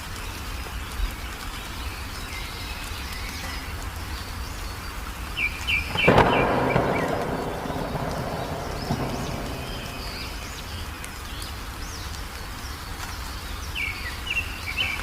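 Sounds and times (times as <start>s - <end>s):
birds chirping and whistling: 5.4s - 12.0s
low rumbling background: 6.0s - 12.0s.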